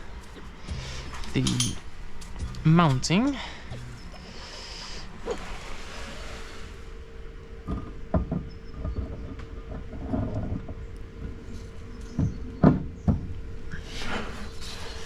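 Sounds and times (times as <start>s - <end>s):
faint steady hum: 0.0s - 15.0s
car parts knocking and clunking: 7.6s - 13.8s.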